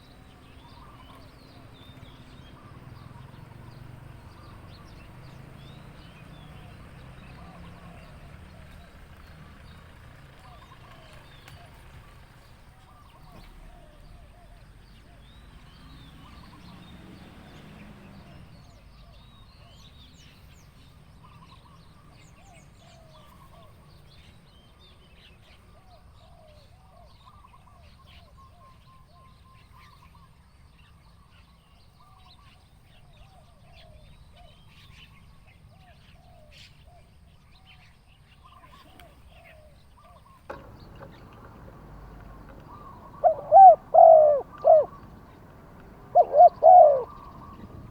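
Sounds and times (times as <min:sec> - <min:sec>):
small birds chirping: 0:00.0 - 0:26.7, 0:37.6 - 0:47.9
low background rumble: 0:40.5 - 0:47.9.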